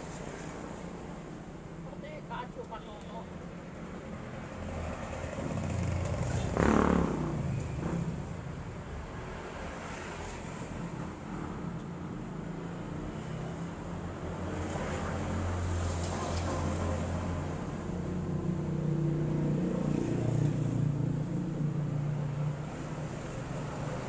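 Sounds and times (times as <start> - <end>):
traffic engines humming: 0.0 - 24.0
vehicle passing close: 4.8 - 8.8.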